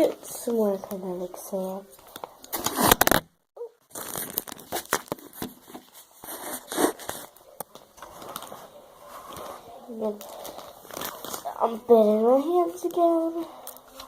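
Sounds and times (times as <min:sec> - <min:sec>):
plastic crinkling and rustling: 0:00.0 - 0:14.0.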